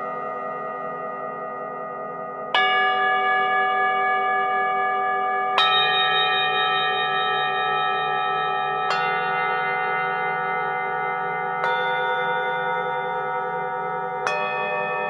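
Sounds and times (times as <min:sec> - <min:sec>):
singing bowl ringing: 0:05.3 - 0:15.0.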